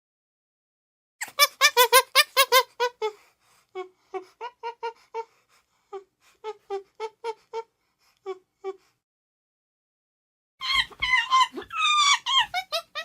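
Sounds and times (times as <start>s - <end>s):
chimpanzee calling: 10.6s - 13.0s.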